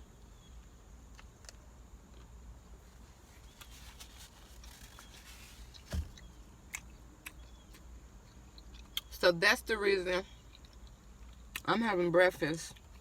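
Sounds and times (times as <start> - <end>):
car cabin rumble: 3.4 - 6.4.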